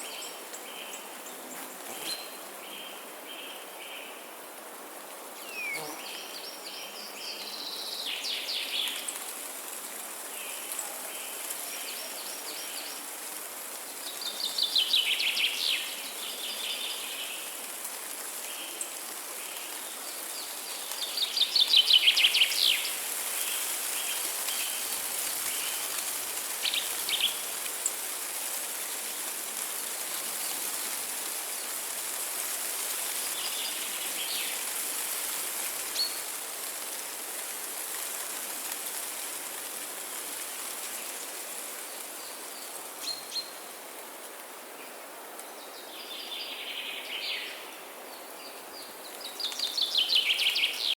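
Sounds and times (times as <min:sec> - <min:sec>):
steady high hiss: 0:00.0 - 0:48.3
songbirds singing: 0:05.4 - 0:09.2.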